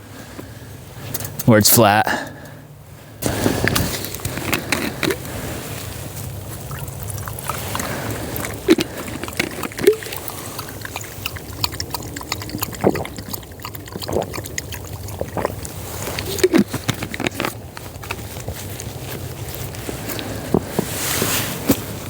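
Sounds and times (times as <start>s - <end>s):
camping cooking gear handled: 3.2s - 11.2s, 15.8s - 22.0s.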